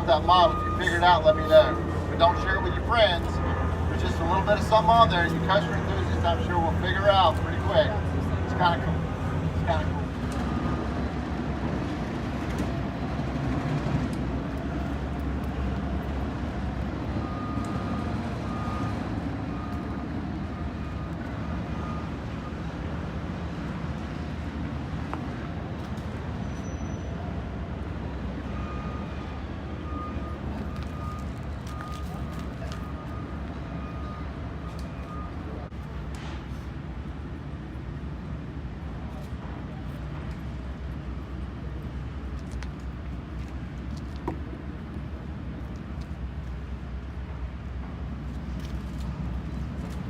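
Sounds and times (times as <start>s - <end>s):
reversing alarm beeping: 0.0s - 8.9s, 9.5s - 11.1s, 17.0s - 22.8s, 28.4s - 35.7s
construction vehicle engine running: 0.0s - 50.0s.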